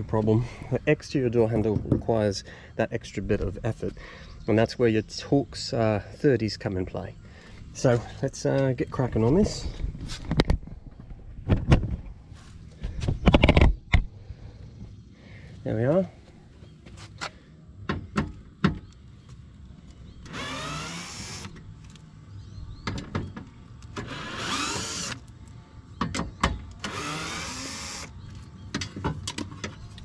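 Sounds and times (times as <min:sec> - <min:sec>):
cordless power driver whirring: 0:20.2 - 0:21.6, 0:23.9 - 0:25.3, 0:26.8 - 0:28.2.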